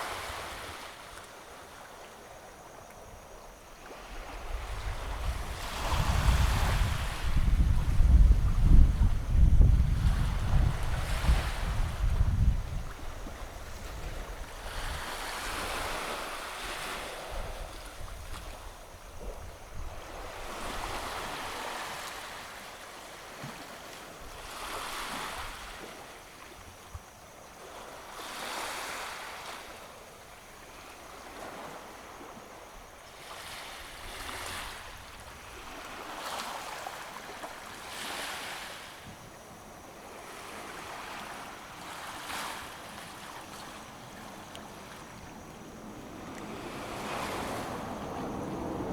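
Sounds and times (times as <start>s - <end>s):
sea waves on a beach: 0.0s - 48.9s
wind buffeting microphone: 4.2s - 16.2s, 44.6s - 48.9s.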